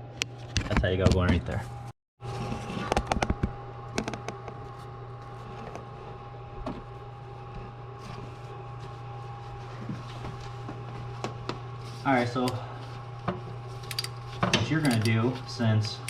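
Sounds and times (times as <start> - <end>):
steady hum: 0.0 - 16.0
hand tools clattering on metal: 13.9 - 15.3.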